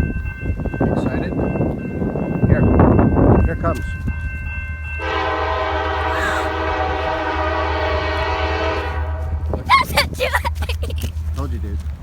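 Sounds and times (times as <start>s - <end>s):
low rumble of train: 0.0s - 9.7s, 10.9s - 12.0s
train horn blowing: 5.0s - 9.6s.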